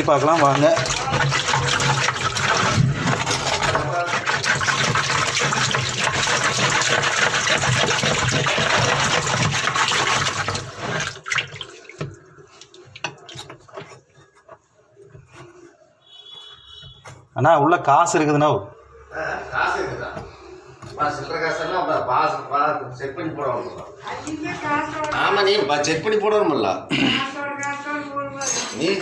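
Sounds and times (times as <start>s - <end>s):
water rushing into washing machine: 0.0s - 14.3s.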